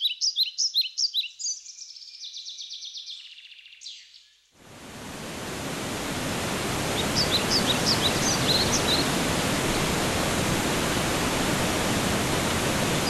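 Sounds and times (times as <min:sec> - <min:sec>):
songbird singing: 0:00.0 - 0:04.5, 0:06.7 - 0:11.2
steady rushing noise: 0:04.6 - 0:13.0.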